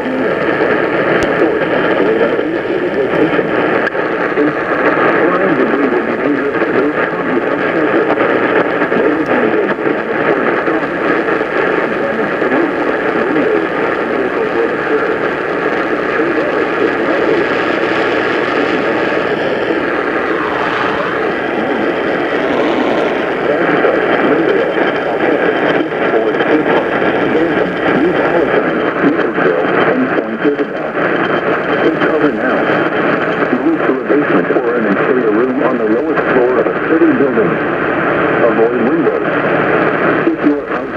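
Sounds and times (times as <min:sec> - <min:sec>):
faint muffled voice: 0:00.0 - 0:31.1
radio static hiss: 0:00.0 - 0:40.9.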